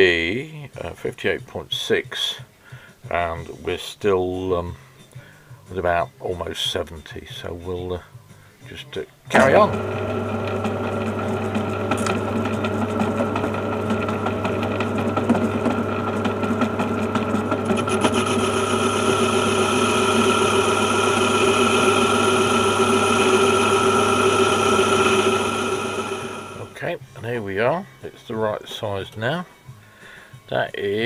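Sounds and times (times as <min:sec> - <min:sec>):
lathe motor hum: 0:09.3 - 0:26.8
metal cutting scrape: 0:17.6 - 0:26.7.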